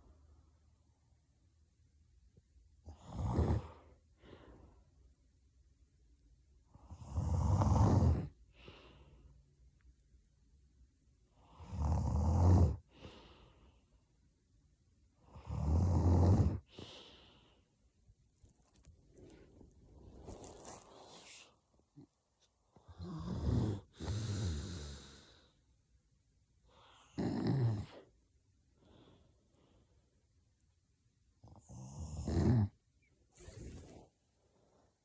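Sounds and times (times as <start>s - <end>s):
woman snoring loudly: 7.0s - 8.3s, 15.4s - 16.6s, 23.0s - 25.1s, 27.2s - 28.0s, 31.8s - 32.7s, 33.4s - 34.0s
soft breath: 16.6s - 17.9s, 18.5s - 25.8s, 33.3s - 35.0s.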